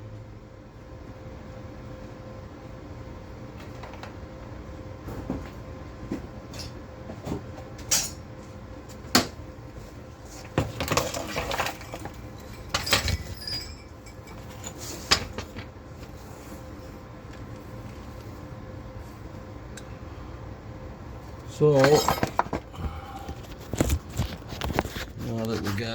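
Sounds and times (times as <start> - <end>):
faint steady hum: 0.0 - 25.9
metal tools clanking: 10.7 - 15.6, 21.6 - 22.6.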